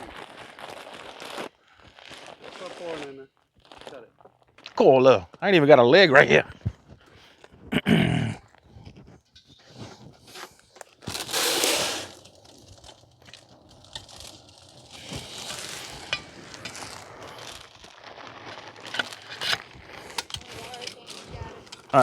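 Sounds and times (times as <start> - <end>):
grain pouring: 0.0 - 4.1, 9.7 - 22.0
sack rustling and crinkling: 0.0 - 4.9, 8.5 - 22.0.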